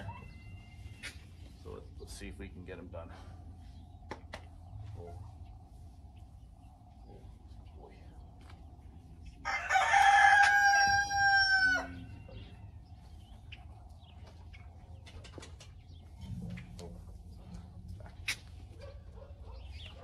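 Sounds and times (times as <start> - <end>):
rooster crowing: 9.4 - 12.3.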